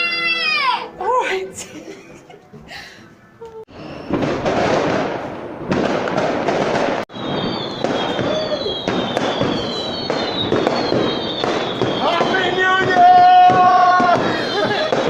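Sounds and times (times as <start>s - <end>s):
fireworks bangs: 3.7s - 15.0s
fireworks crackling: 3.7s - 15.0s
fireworks whistling: 3.7s - 15.0s.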